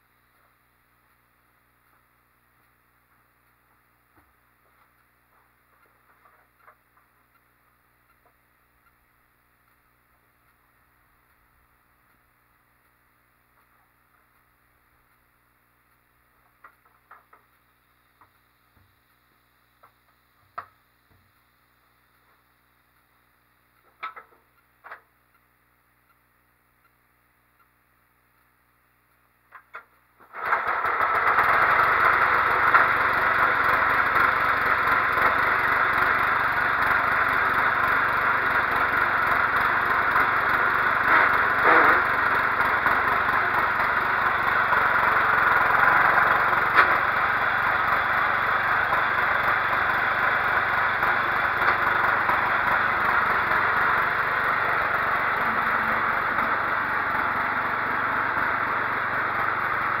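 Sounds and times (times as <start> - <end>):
lawn tractor engine running: 29.6 - 60.0.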